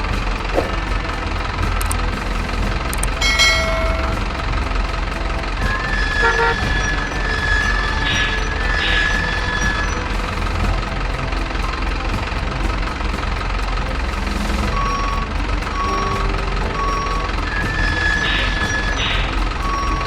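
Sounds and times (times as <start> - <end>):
reversing beeper: 0.0 - 20.0
simulated diesel engine running: 0.0 - 20.0
truck horn: 6.2 - 7.3.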